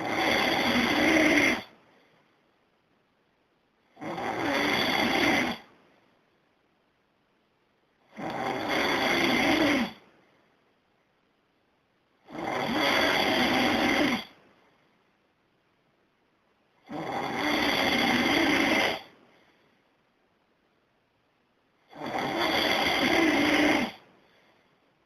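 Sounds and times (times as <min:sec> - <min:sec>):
person snoring: 0:00.0 - 0:01.7, 0:03.9 - 0:05.7, 0:08.0 - 0:10.0, 0:12.2 - 0:14.4, 0:16.8 - 0:19.2, 0:21.9 - 0:24.1.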